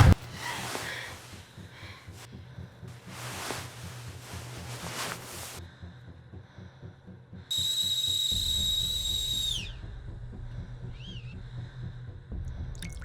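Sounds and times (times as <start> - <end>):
kettle whistling: 7.5 - 9.8.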